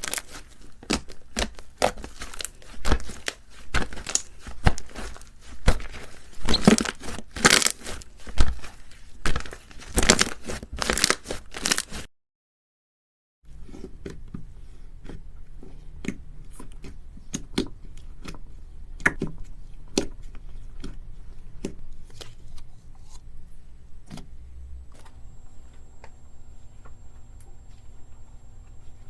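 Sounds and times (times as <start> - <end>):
crunchy slime crackling and popping: 0.0 - 12.1
low steady hum: 13.5 - 29.0.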